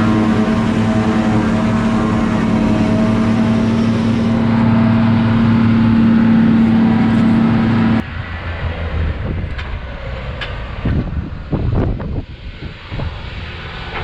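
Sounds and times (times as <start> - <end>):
tractor engine running: 0.0 - 8.1.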